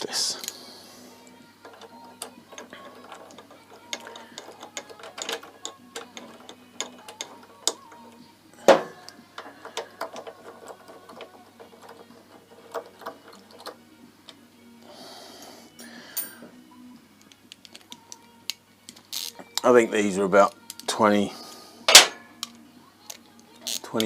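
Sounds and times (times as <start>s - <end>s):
metallic clicks of hand tools: 1.7s - 8.2s, 20.6s - 20.9s.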